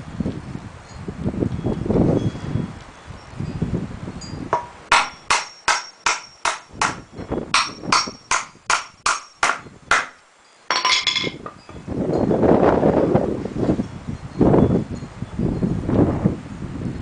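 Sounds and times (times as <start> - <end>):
hammer striking nails: 4.5 - 11.4
metallic clatter: 10.7 - 11.5.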